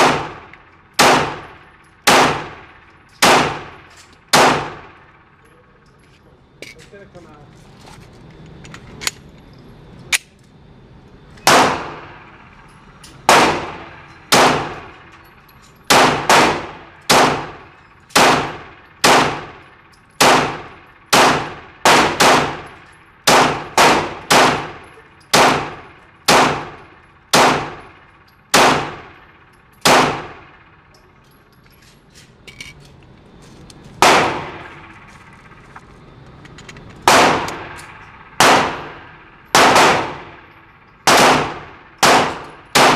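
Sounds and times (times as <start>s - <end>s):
pistol shots with echo: 0.0s - 5.0s, 11.4s - 12.2s, 13.3s - 15.0s, 15.9s - 19.6s, 20.2s - 27.9s, 28.5s - 29.2s, 29.8s - 30.6s, 34.0s - 34.8s, 37.0s - 42.9s.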